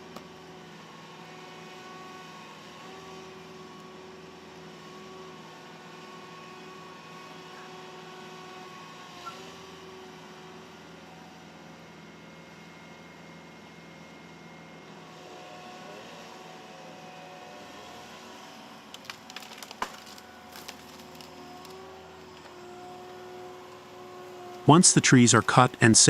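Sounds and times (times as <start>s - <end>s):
wood cracking and splintering: 18.9s - 22.5s.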